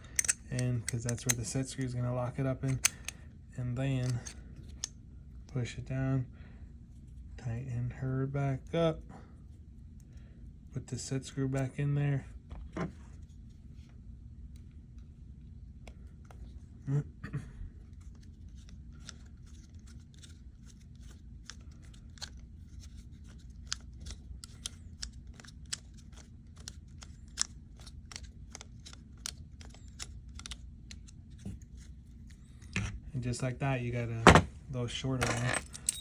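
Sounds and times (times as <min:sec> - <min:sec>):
screwdriver metal clicks and scrapes: 0:00.0 - 0:01.9, 0:02.6 - 0:03.2, 0:03.9 - 0:04.9
louder knock: 0:34.2 - 0:34.6.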